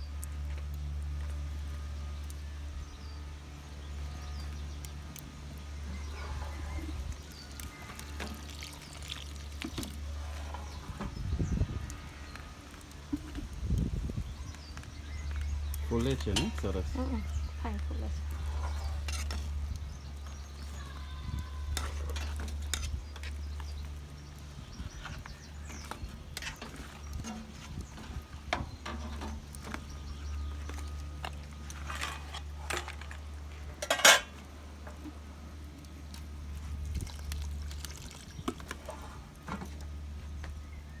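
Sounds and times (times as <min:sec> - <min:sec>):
metal utensils clinking on pans: 0:16.0 - 0:16.9, 0:31.8 - 0:34.4.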